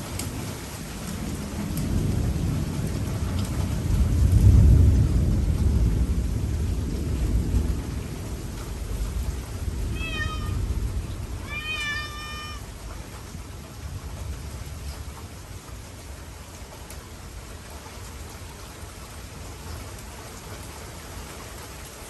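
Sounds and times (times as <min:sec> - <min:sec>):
thunder rolling: 0:00.0 - 0:15.3
steady rain: 0:00.0 - 0:22.0
cat meowing: 0:09.9 - 0:12.8.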